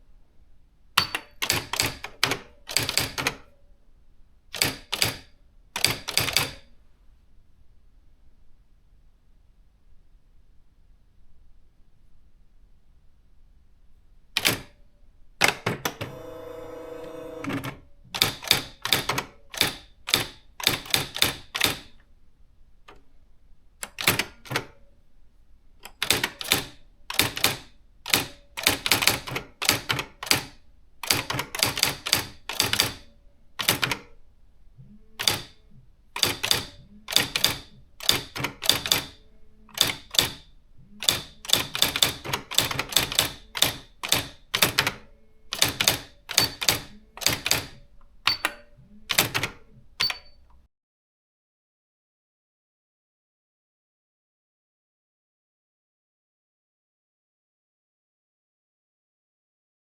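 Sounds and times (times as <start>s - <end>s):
electronic typewriter typing: 1.0s - 3.5s, 4.6s - 6.6s, 14.4s - 14.7s, 15.4s - 22.0s, 23.8s - 24.8s, 25.9s - 34.1s, 35.2s - 35.6s, 36.2s - 40.4s, 41.0s - 50.4s.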